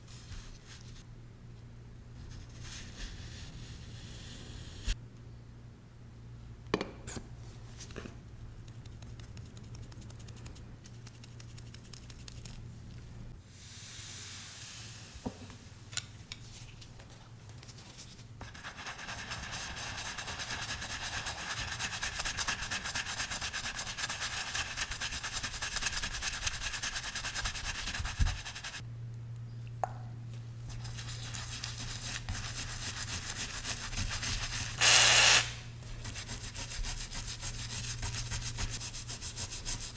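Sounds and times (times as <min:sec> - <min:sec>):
steady low hum: 0:24.8 - 0:34.8
coin being rubbed clean: 0:31.5 - 0:35.5.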